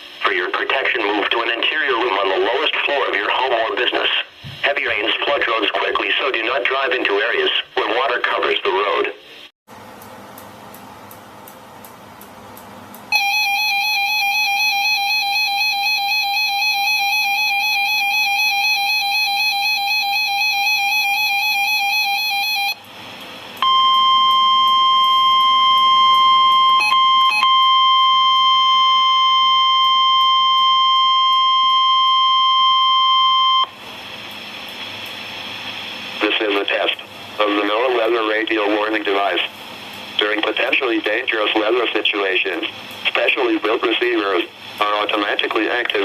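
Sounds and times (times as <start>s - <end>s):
steady alarm tone: 13.1s - 38.1s.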